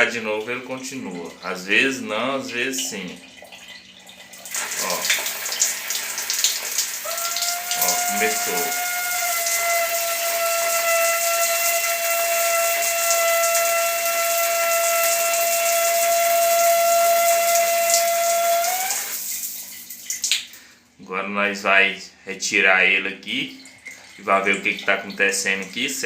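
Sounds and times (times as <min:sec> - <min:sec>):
shower spray hissing: 0:04.5 - 0:19.7
shower high whistle: 0:07.0 - 0:19.2.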